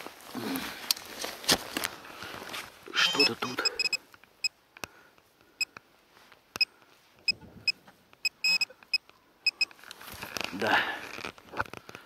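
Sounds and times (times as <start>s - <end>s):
metal detector beeps: 3.0s - 4.0s, 8.2s - 9.7s.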